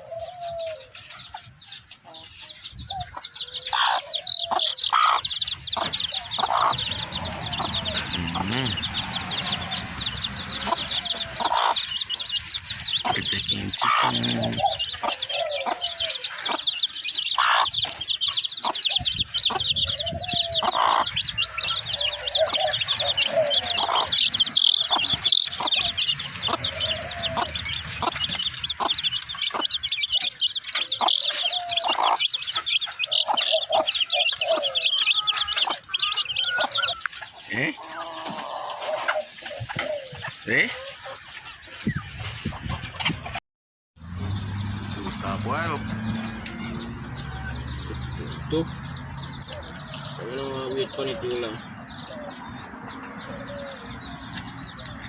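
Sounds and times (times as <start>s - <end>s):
bird clucking calls: 0.0s - 43.4s, 44.3s - 55.0s
high-pitched trill: 44.0s - 50.1s.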